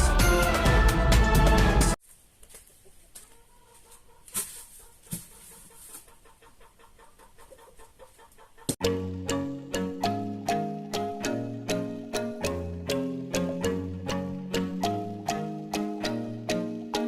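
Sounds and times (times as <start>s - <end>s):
background music: 0.0s - 2.0s, 8.8s - 17.0s
chickens clucking: 2.5s - 8.8s.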